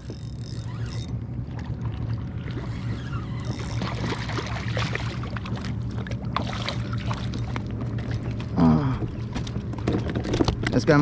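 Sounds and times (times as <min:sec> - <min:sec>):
steady low hum: 0:00.0 - 0:11.0
water splashing and dripping: 0:03.8 - 0:08.6.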